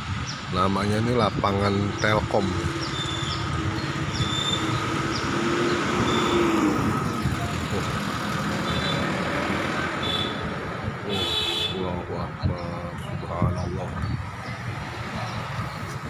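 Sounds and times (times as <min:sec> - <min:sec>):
road traffic noise: 0:00.0 - 0:16.0
vehicle engine passing by: 0:01.5 - 0:11.0.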